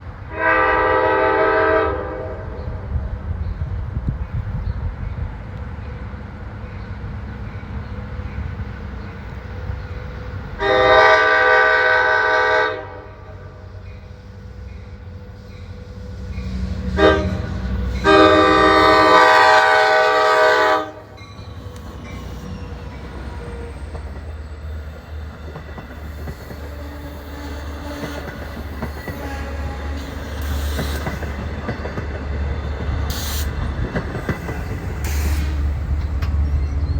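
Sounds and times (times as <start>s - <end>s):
locomotive air horn blasts: 0.3s - 2.5s, 10.6s - 13.6s, 16.5s - 21.2s, 29.1s - 30.6s
locomotive diesel engine rumbling: 13.2s - 36.9s.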